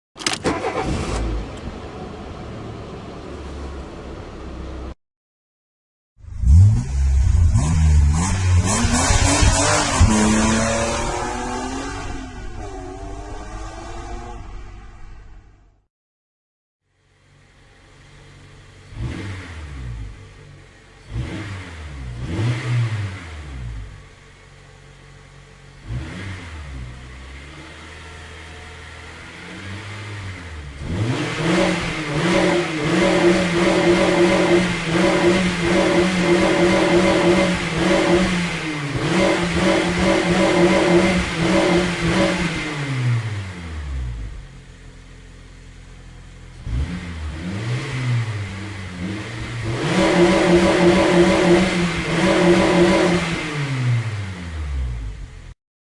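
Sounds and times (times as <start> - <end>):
car engine revving: 6.2 - 15.8, 18.0 - 55.5.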